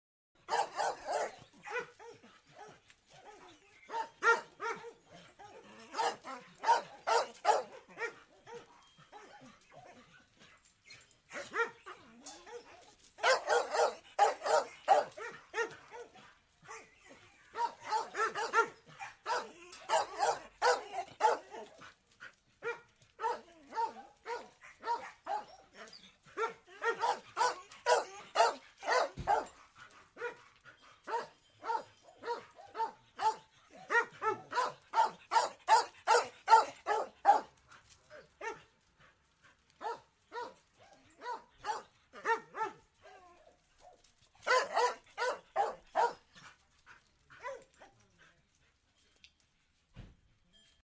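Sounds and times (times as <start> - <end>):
dog barking rapidly: 0.5 - 1.8, 44.5 - 46.2.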